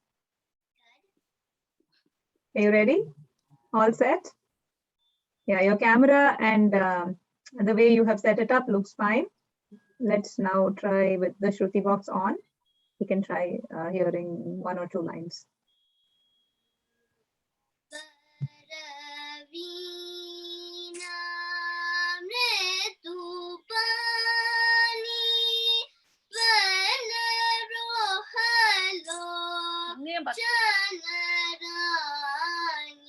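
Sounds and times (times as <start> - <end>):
person singing with ornamented notes: 17.9 - 33.0.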